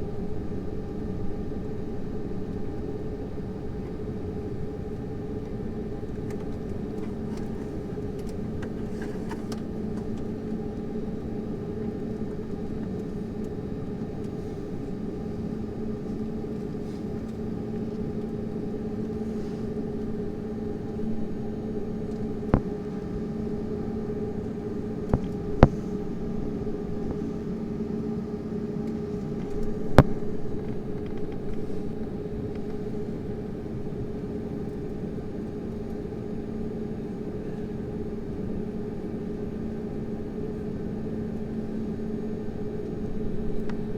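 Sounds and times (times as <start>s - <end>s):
airplane cabin hum: 0.0s - 43.9s.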